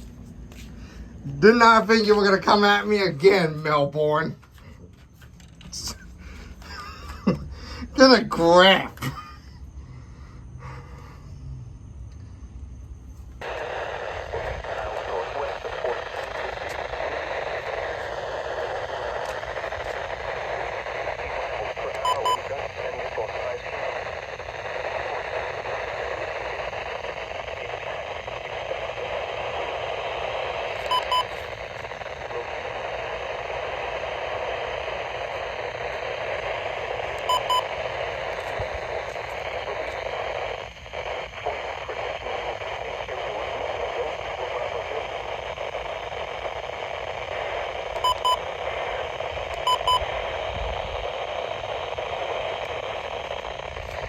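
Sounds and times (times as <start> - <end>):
radio static hiss: 0.0 - 9.5, 12.9 - 54.0.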